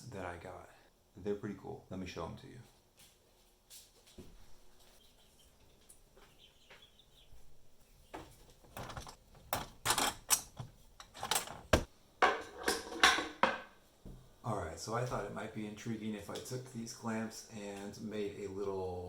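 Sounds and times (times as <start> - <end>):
bar clamps clicking and rattling: 8.7 - 13.6.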